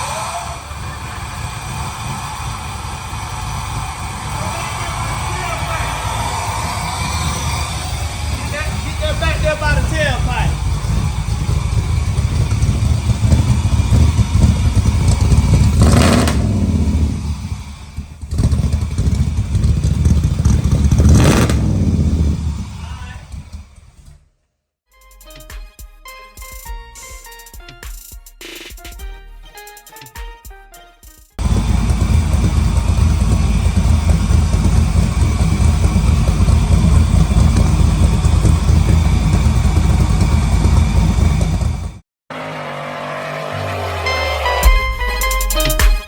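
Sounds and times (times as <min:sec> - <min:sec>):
engine idling rumble: 0:00.0 - 0:24.2, 0:31.4 - 0:42.0
engine revving: 0:00.0 - 0:24.2, 0:31.4 - 0:45.8.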